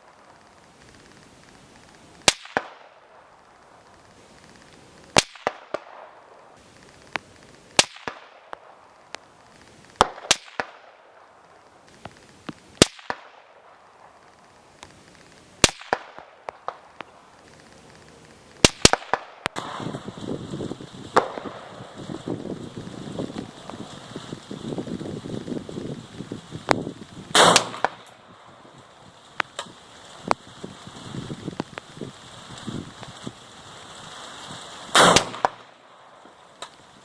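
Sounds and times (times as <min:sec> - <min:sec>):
rifle shots: 0:18.6 - 0:20.2, 0:21.1 - 0:22.0, 0:27.3 - 0:28.8, 0:34.9 - 0:36.7.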